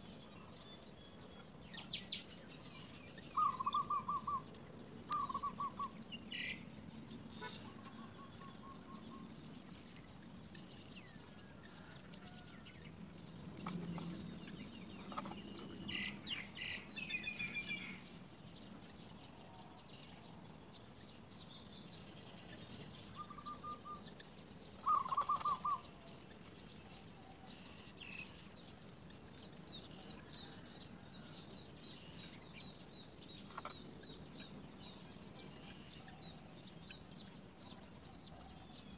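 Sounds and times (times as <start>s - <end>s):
higher bird chirping: 1.2s - 9.5s, 22.1s - 26.1s
birds trilling: 3.3s - 4.4s, 24.8s - 25.9s.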